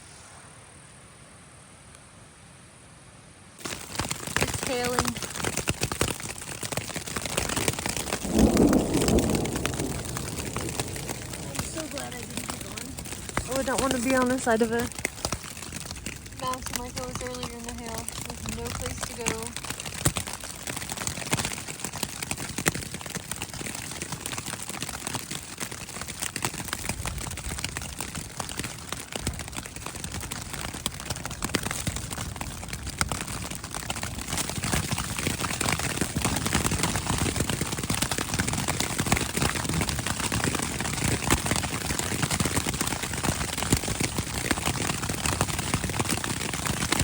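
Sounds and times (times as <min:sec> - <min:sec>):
hail and rain hitting a tent: 0:03.6 - 0:47.0.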